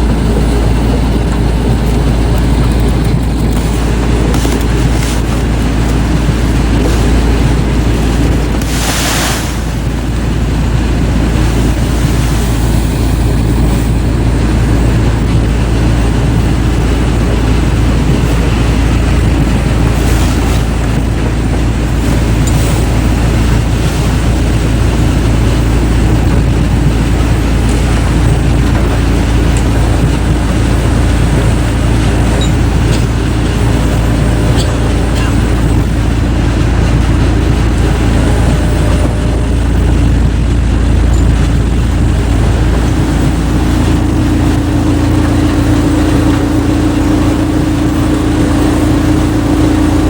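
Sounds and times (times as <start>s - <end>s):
heavy woodworking machinery running: 0.0s - 50.0s.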